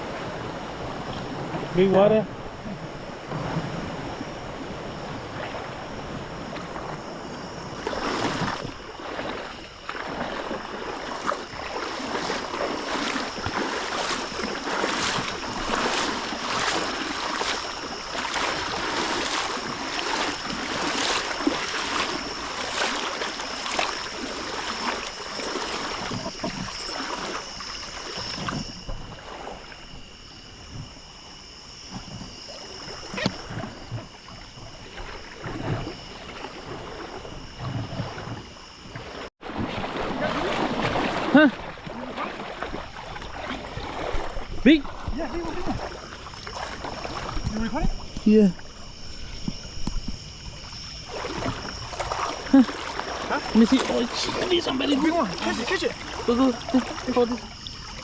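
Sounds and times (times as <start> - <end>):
water splashing and sloshing: 0.0 - 58.0.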